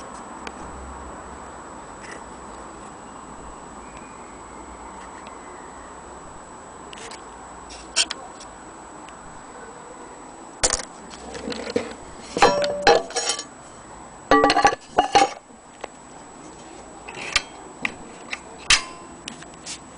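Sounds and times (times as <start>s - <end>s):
metal parts clinking and knocking: 10.6s - 13.5s, 14.3s - 15.4s.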